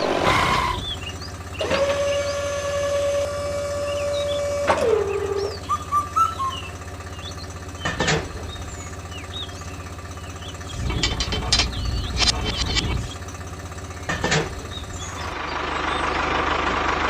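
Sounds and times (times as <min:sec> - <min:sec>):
bird chirps: 0:00.5 - 0:02.5, 0:03.6 - 0:16.3
small engine knocking: 0:00.8 - 0:17.0
sharp clacks: 0:10.8 - 0:13.2.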